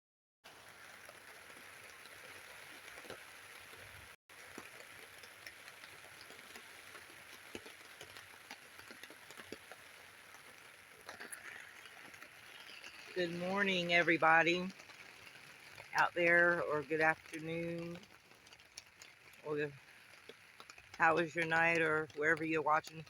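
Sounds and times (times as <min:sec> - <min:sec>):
rain on a tent: 0:00.5 - 0:23.0.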